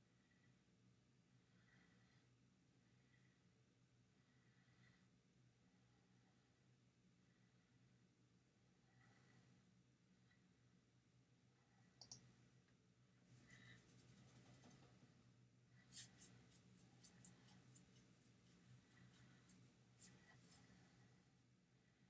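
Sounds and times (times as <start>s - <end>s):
soft scratching: 13.2s - 15.2s, 15.8s - 21.2s.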